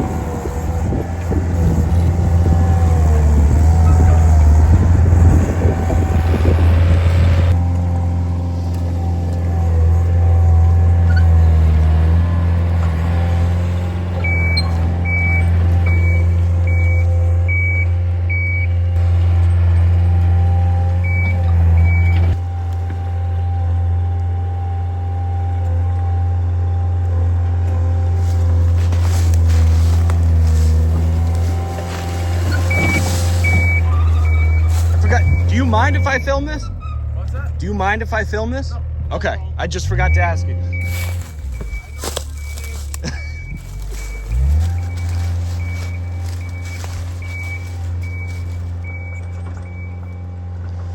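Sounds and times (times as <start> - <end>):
heavy machine engine running: 0.0 - 50.9
back-up alarm beeping: 14.2 - 18.8, 21.0 - 22.4, 30.3 - 36.8, 39.8 - 50.2.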